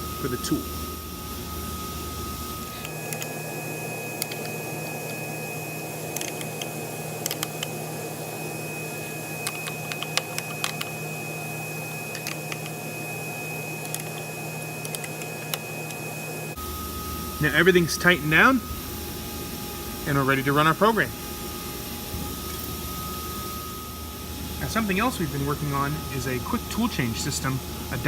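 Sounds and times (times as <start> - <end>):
steady low hum: 0.0 - 28.0
small metallic clicks and taps: 13.8 - 15.6.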